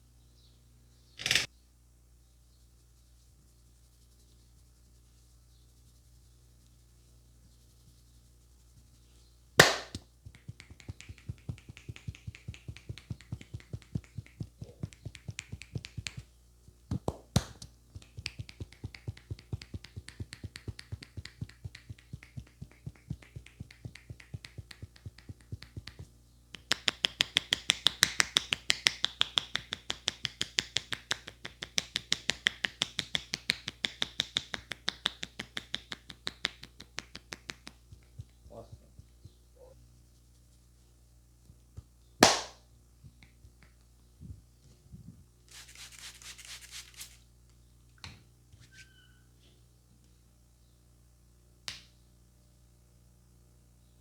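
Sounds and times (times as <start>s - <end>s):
sharp snap: 9.6s - 16.2s, 42.2s - 42.6s, 51.6s - 52.0s
hands tapping and slapping a head: 9.6s - 39.4s, 41.8s - 43.9s, 51.6s - 52.0s.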